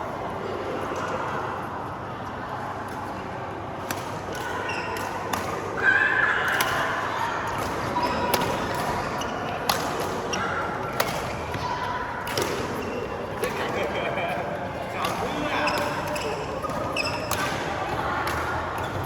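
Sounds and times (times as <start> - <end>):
murmur of voices: 0.0 - 19.0
racket striking shuttlecock: 10.9 - 11.4.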